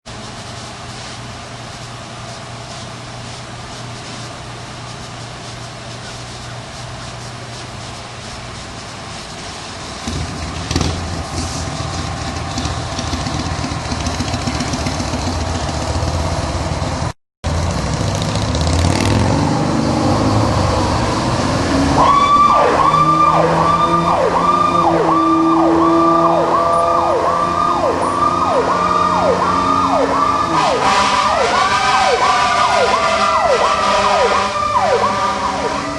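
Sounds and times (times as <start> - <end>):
truck engine running: 0.1 - 35.9
siren winding up: 19.4 - 30.8
electronic siren yelping: 21.7 - 35.9
air horn tone: 25.2 - 35.9.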